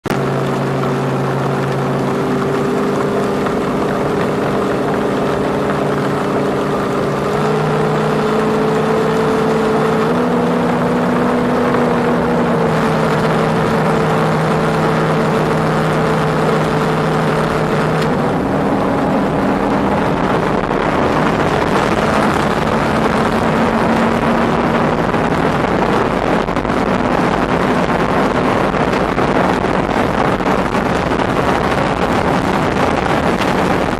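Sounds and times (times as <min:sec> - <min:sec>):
outboard engine at full throttle: 0:00.0 - 0:33.9
wind rushing over microphone: 0:00.0 - 0:33.9.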